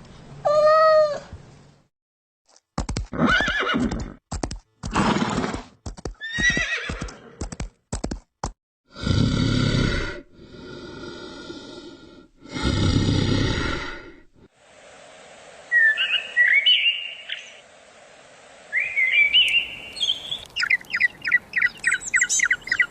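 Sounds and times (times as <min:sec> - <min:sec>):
horse whinnying: 0:03.2 - 0:04.1, 0:06.2 - 0:07.3
breathy rushing noise: 0:10.5 - 0:20.4.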